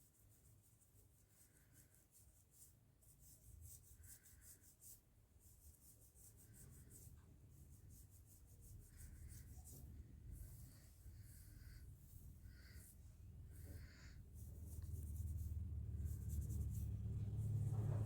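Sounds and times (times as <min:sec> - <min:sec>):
fingers scratching through hair: 0:13.6 - 0:18.0.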